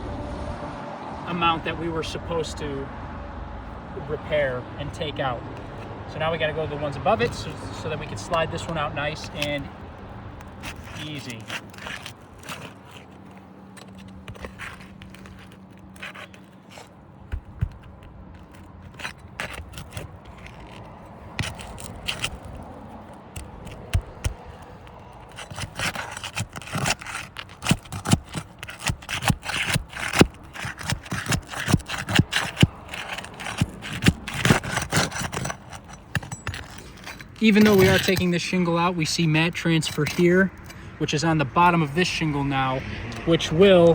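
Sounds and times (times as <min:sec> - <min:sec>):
shingles scraping and crackling: 0:04.9 - 0:42.1.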